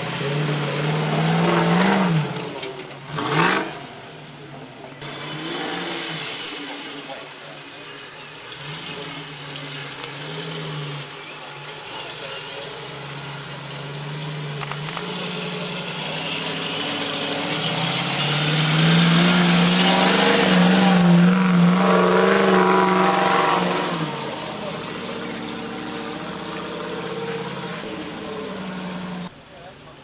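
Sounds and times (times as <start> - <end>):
engine running under load: 0.0 - 29.3
sharp clicks: 14.6 - 15.1.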